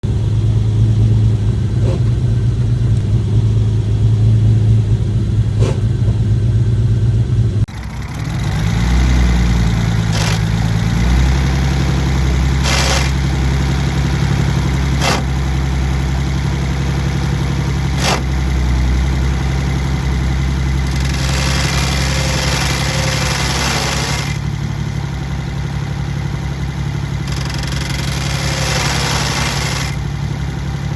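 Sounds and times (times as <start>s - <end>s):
car engine idling: 0.0s - 30.9s
clutch grinding: 0.0s - 30.9s
sharp clicks: 27.2s - 30.0s.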